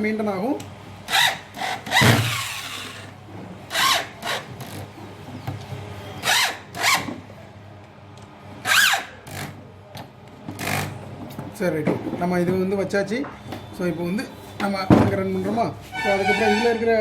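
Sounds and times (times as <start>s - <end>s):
power screwdriver spinning: 1.1s - 3.1s.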